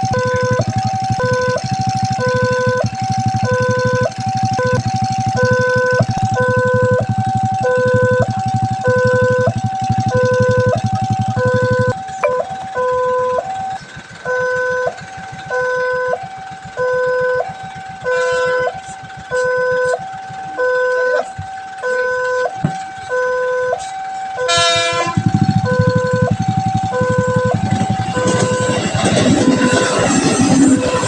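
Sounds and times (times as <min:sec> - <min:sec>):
level crossing two-tone alarm: 0:00.0 - 0:31.0
low engine rumble: 0:00.0 - 0:31.0
train horn blast: 0:18.1 - 0:18.8, 0:23.4 - 0:26.3.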